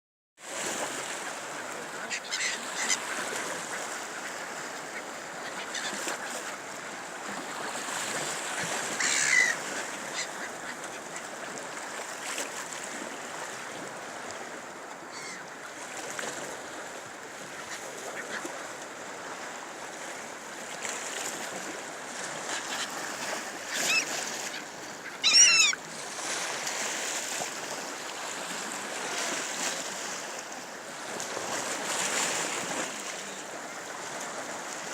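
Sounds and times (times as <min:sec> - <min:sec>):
sea waves washing: 0:00.4 - 0:34.9
harsh bird calls: 0:23.7 - 0:25.8.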